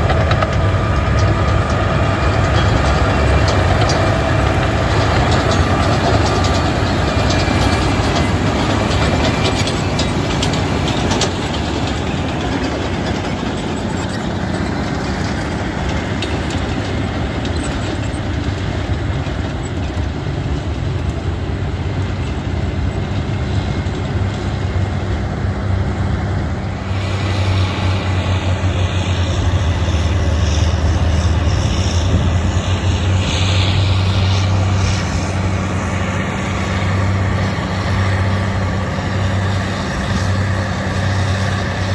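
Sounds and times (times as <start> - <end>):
machine clanking: 0.0 - 21.2
diesel engine running: 0.0 - 41.9.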